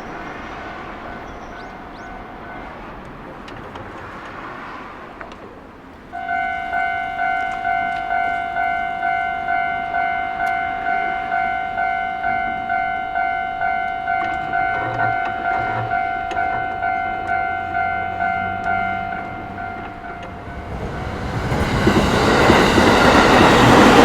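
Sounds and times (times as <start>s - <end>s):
level crossing warning bell: 0.0s - 3.5s, 6.0s - 24.0s
steady rushing noise: 14.9s - 24.0s.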